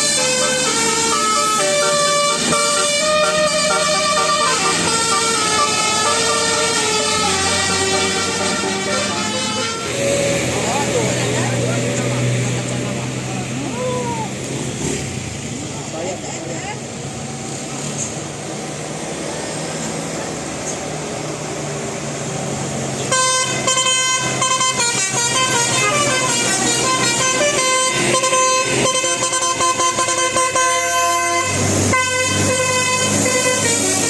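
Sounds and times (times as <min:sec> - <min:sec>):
multi-tone bus horn melody: 0:00.0 - 0:13.2, 0:22.9 - 0:34.0
bus engine: 0:00.0 - 0:34.0
traffic noise: 0:00.0 - 0:34.0.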